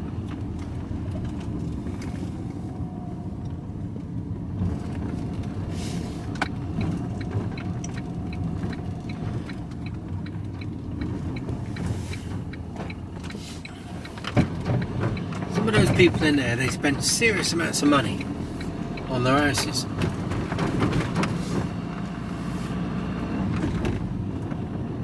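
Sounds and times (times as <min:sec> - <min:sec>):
engine and road rumble: 0:00.0 - 0:25.0
light regular ticking: 0:06.4 - 0:20.5.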